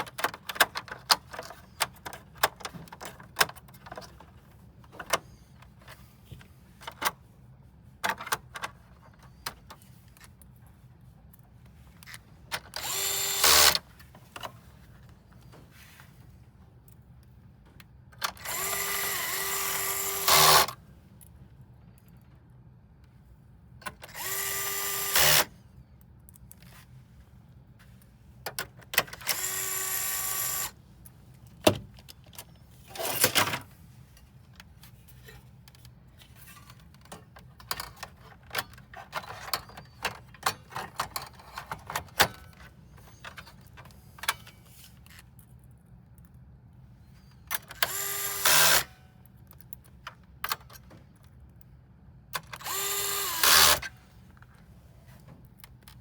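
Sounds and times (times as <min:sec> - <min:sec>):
electric screwdriver whirring: 0:12.8 - 0:13.8, 0:18.4 - 0:20.7, 0:24.1 - 0:25.5, 0:29.3 - 0:30.8, 0:47.8 - 0:48.9, 0:52.6 - 0:53.9.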